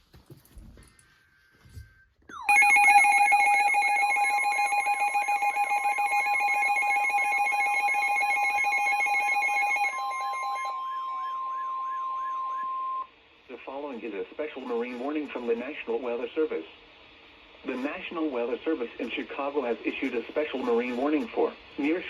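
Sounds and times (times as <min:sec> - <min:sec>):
sweeping electronic alarm: 0:01.1 - 0:13.1
steady alert tone: 0:02.4 - 0:11.9.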